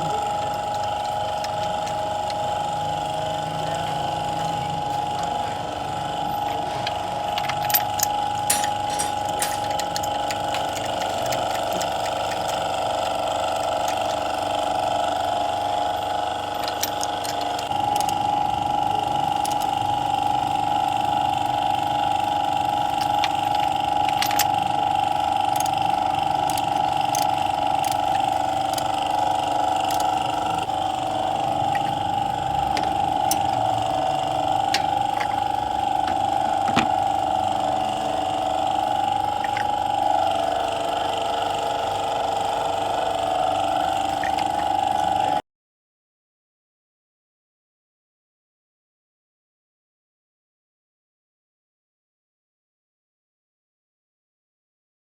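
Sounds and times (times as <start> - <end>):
machine droning: 0.0 - 45.4
sharp metallic clicks: 6.8 - 14.3, 16.6 - 18.2, 19.4 - 19.8, 22.8 - 24.8, 25.4 - 30.7.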